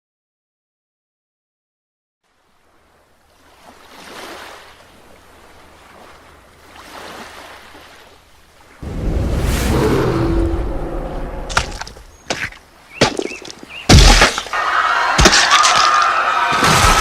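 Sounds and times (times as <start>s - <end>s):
ocean waves washing in: 2.2s - 13.0s
loud deep rumble: 8.8s - 12.1s.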